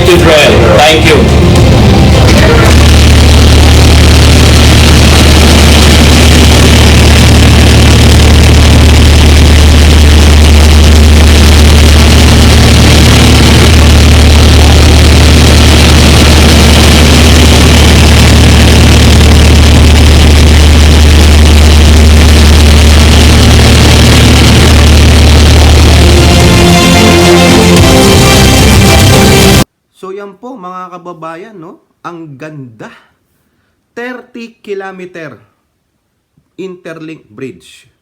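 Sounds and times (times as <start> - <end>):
drilling rig engine humming: 0.0 - 29.7.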